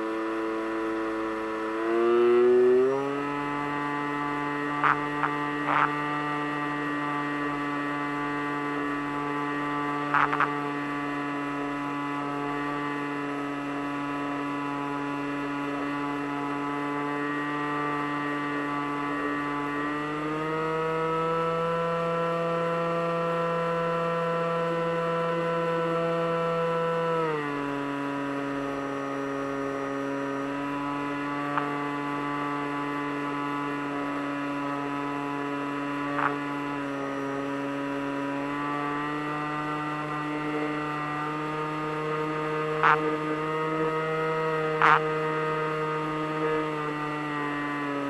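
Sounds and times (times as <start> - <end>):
model plane electric motor: 0.0 - 12.4, 24.7 - 40.4, 42.8 - 43.4, 44.4 - 45.0.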